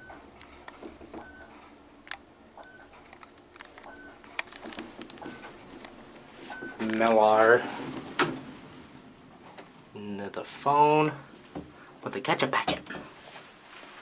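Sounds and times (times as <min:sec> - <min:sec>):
low background hum: 0:00.0 - 0:14.0.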